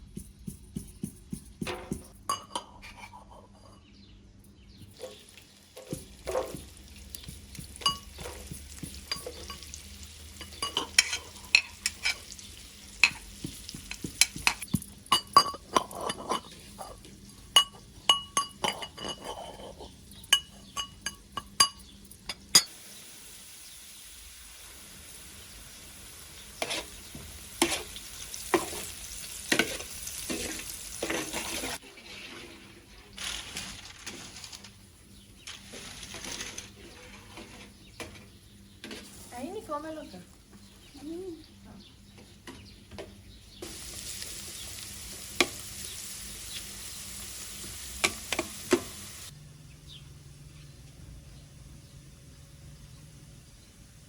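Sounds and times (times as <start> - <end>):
food sizzling in pan: 5.0 - 15.3, 22.6 - 31.8, 43.6 - 49.3
utensil scraping pan: 15.4 - 17.1, 18.6 - 21.0, 26.6 - 28.9, 29.5 - 32.7.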